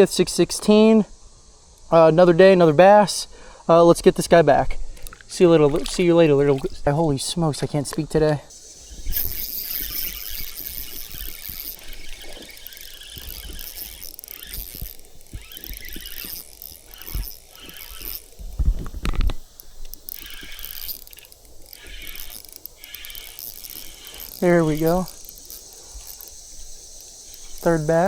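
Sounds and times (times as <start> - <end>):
fishing reel gears squealing and clicking: 8.5 - 28.0.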